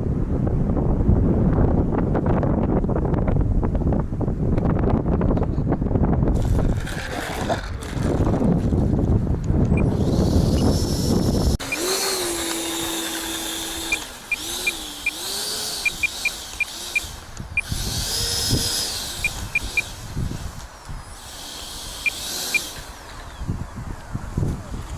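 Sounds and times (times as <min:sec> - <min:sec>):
wind buffeting microphone: 0:00.0 - 0:24.9
electric ducted fan whining: 0:09.2 - 0:24.9.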